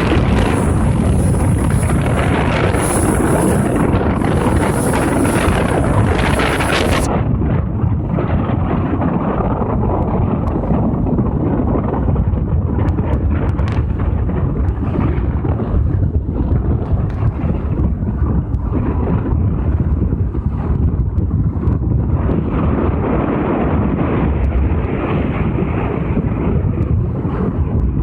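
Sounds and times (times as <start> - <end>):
wind buffeting microphone: 0.0 - 28.0.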